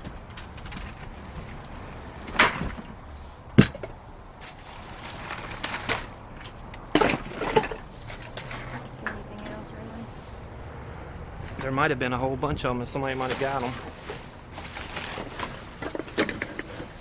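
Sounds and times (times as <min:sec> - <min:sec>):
items knocking and rustling: 0:00.0 - 0:09.6, 0:13.0 - 0:17.0.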